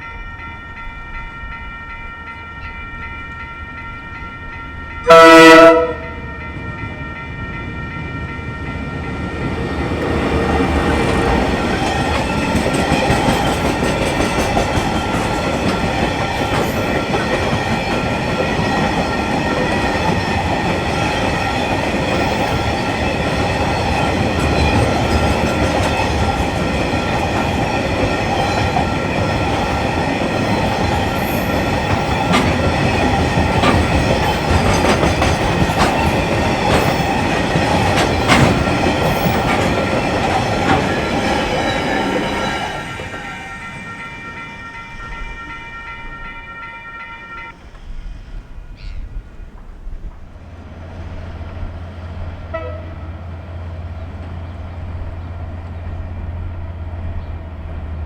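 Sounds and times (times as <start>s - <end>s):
freight train wheels clicking: 7.6s - 43.5s.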